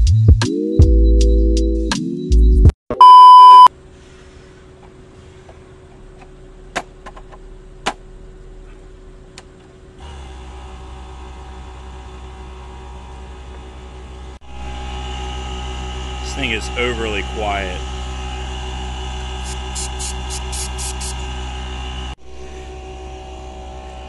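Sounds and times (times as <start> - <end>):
loud beep tone: 2.9 - 3.7
air compressor running: 10.0 - 24.0.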